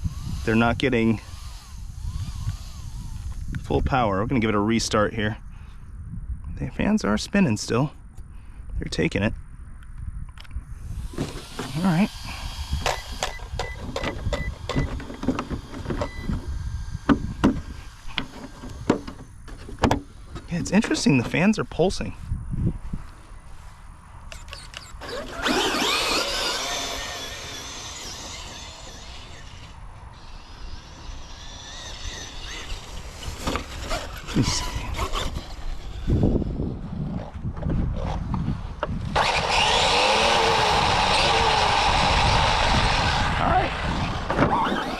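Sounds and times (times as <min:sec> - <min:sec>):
rc truck electric motor whine: 0:00.0 - 0:03.7, 0:10.8 - 0:20.5, 0:24.3 - 0:36.7, 0:38.9 - 0:44.9
small cooling fans whirring: 0:00.0 - 0:05.4, 0:10.6 - 0:37.1, 0:38.6 - 0:44.9.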